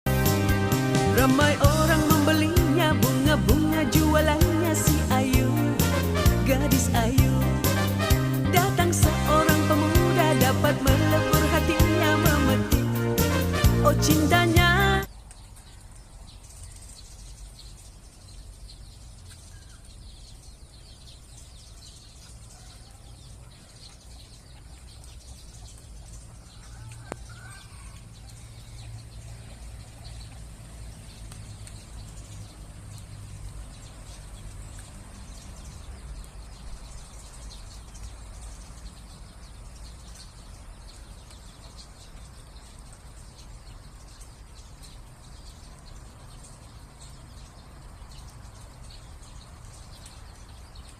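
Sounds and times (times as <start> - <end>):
small birds chirping: 0.2 - 50.9.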